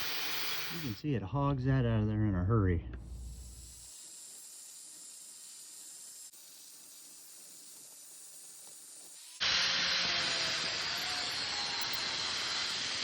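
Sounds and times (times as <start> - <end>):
angle grinder grinding wood: 0.0 - 1.0, 3.0 - 6.3, 8.6 - 13.0.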